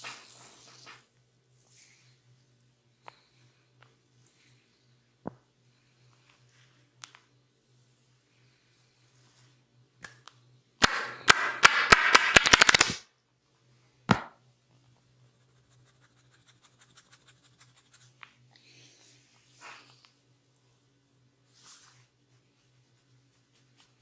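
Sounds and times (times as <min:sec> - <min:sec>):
sharp percussive cracks: 0:10.8 - 0:13.0.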